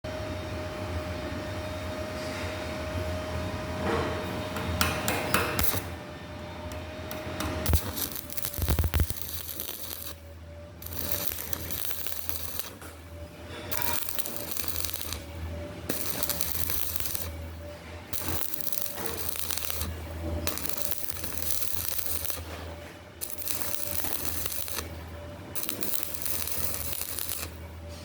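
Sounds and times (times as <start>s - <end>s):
welding machine low hum: 0.1s - 28.0s
welding arc crackling: 5.6s - 6.0s, 7.1s - 27.8s.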